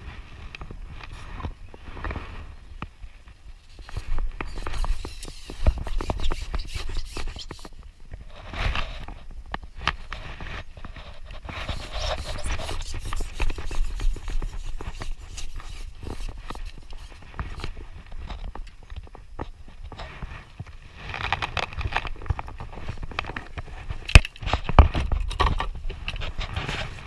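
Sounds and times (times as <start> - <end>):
scraping bursts: 3.7 - 7.8, 10.0 - 17.8.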